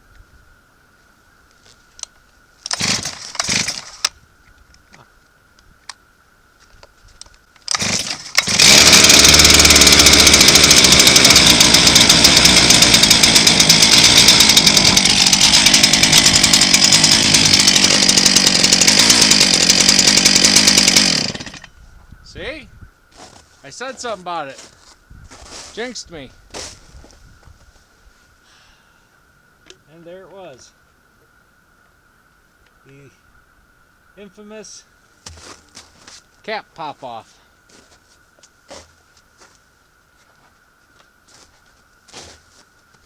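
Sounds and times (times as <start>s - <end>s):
chainsaw pull-start cord: 2.6s - 4.1s, 7.6s - 21.7s
chainsaw engine running loud: 2.7s - 3.8s, 7.7s - 21.7s.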